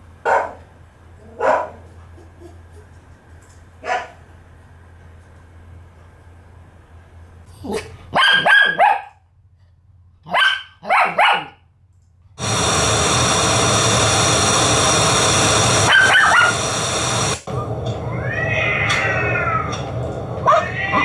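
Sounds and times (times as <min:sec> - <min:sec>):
dog barking: 0:00.2 - 0:02.0, 0:03.8 - 0:04.3, 0:07.6 - 0:09.2, 0:10.2 - 0:11.7, 0:15.8 - 0:16.6
loud steady hiss-like noise: 0:12.4 - 0:21.0.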